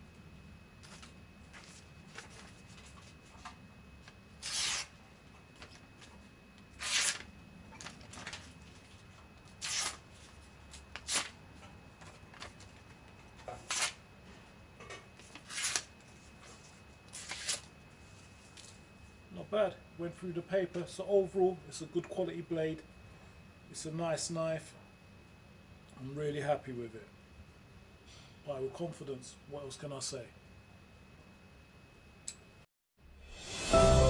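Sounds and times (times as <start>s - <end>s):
paper rustling: 0.8s - 4.9s, 6.8s - 11.4s, 12.0s - 14.0s, 15.2s - 18.8s
knife blade slicing paper: 4.4s - 5.0s, 6.7s - 8.4s, 9.5s - 10.0s, 10.7s - 11.4s, 13.6s - 14.0s, 15.2s - 15.9s, 17.1s - 17.7s.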